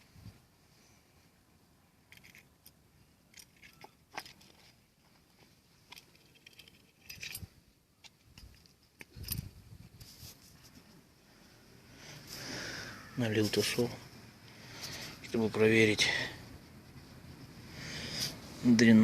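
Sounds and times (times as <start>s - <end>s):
clicks of small metal parts: 2.1s - 4.8s, 5.9s - 9.5s.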